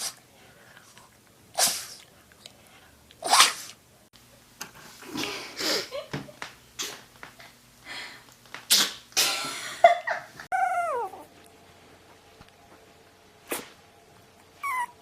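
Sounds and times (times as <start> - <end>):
puppy sneezing: 1.5 - 2.0, 3.2 - 3.8, 8.7 - 9.4, 13.4 - 13.8
puppy whining: 10.5 - 11.5, 14.5 - 15.0.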